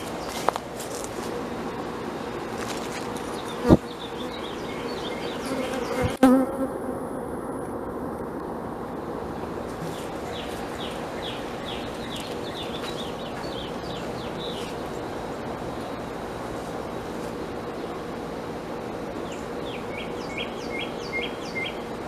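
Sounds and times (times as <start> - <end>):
honeybees buzzing: 0.0 - 22.0.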